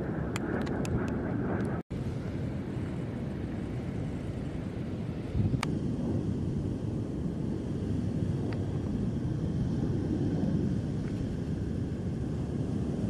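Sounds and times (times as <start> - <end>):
ocean surf rumble: 0.0 - 13.0
wind: 0.0 - 13.0.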